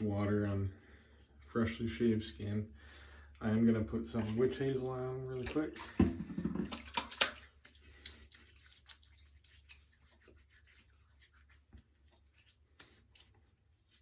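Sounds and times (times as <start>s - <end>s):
patting and rubbing skin: 6.4s - 14.0s.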